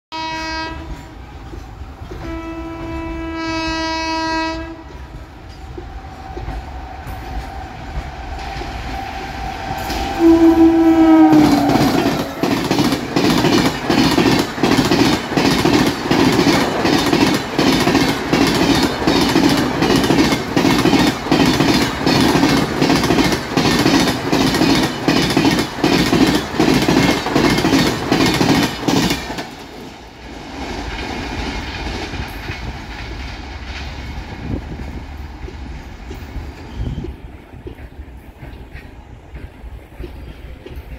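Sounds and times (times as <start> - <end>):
locomotive horn blasts: 0.1 - 1.0, 2.2 - 5.0, 9.9 - 12.4
train wheels clickety-clack: 0.3 - 40.9.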